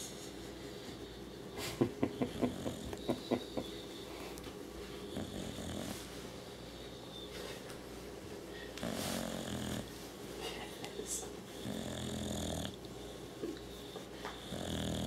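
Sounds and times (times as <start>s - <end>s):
dog snoring: 2.2s - 3.0s, 5.1s - 6.0s, 8.8s - 9.9s, 11.6s - 12.9s, 14.3s - 15.0s.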